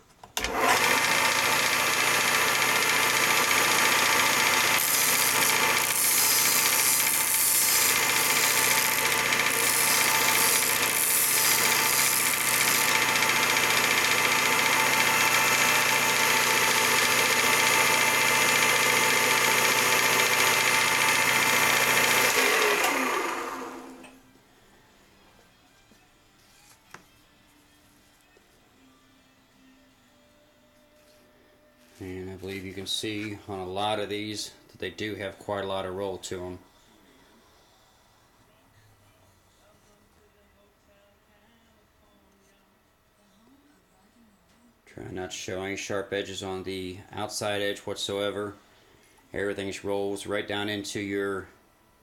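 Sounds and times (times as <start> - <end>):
sander motor hum: 0.4 - 24.2.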